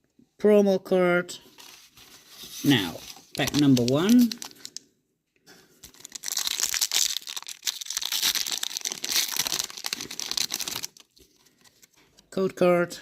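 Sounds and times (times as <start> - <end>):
foil wrapper tearing and crinkling: 3.2 - 4.8, 5.8 - 11.2.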